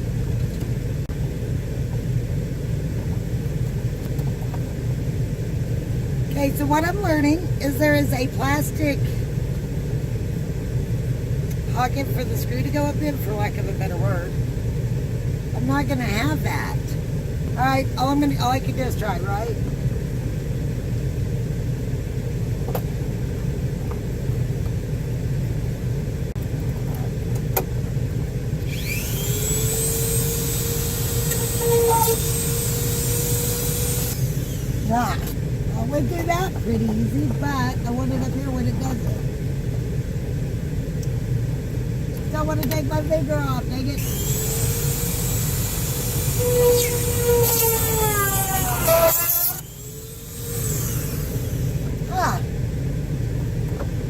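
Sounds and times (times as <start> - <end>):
rotary tool whining: 28.6 - 35.4, 43.9 - 52.2.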